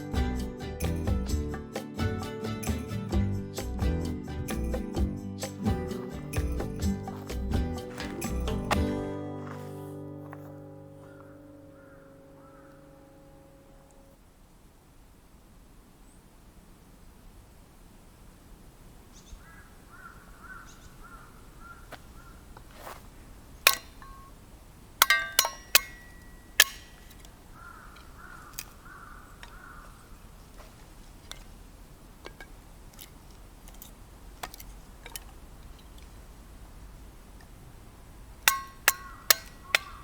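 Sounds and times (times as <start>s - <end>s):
tent-pitching gear clinking: 0.0s - 9.8s, 23.7s - 24.4s, 25.0s - 28.8s, 32.2s - 36.2s, 38.4s - 40.0s
faint bird call: 11.0s - 14.2s.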